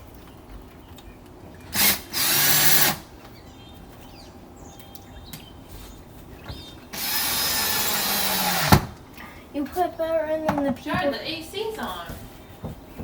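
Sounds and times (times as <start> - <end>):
power drill spinning: 1.7 - 3.1, 6.9 - 8.9.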